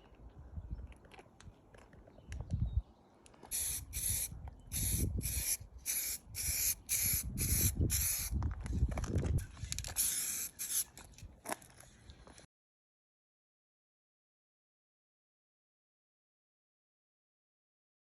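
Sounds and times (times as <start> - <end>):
spray hissing bursts: 3.5 - 8.3, 10.0 - 10.8.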